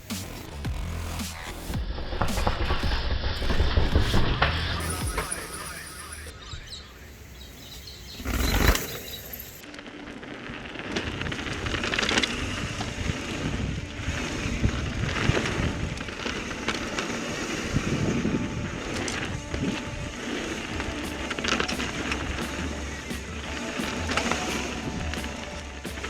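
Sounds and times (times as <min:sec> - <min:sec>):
bike tyres on trail: 0:07.4 - 0:26.0
wind on microphone: 0:10.9 - 0:26.0
loud rush: 0:11.3 - 0:26.0.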